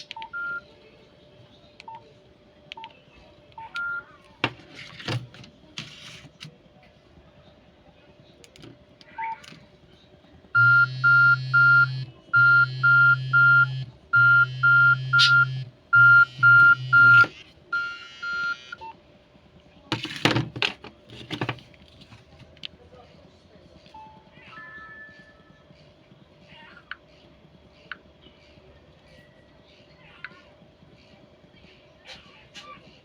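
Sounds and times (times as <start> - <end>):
electronic alarm beeping: 10.6 - 18.9.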